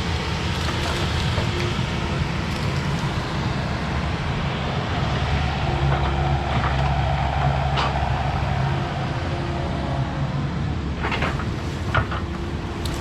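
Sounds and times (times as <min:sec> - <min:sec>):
diesel engine running: 0:00.0 - 0:09.1.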